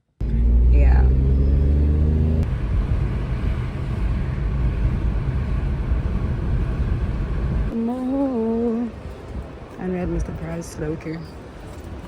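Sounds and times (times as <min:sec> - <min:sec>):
car rumble: 0:00.2 - 0:07.8
low engine drone: 0:00.2 - 0:07.8.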